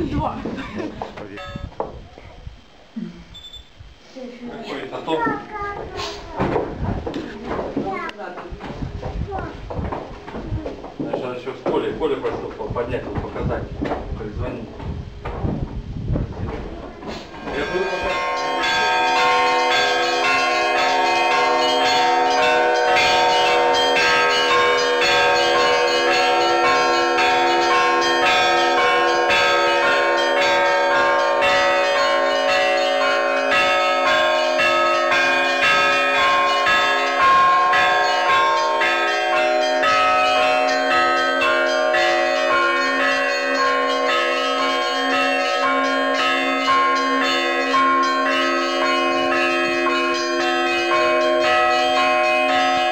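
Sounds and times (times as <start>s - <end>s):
large bells ringing: 0.0s - 1.7s, 17.3s - 52.9s
small bells ringing quickly: 17.5s - 52.9s.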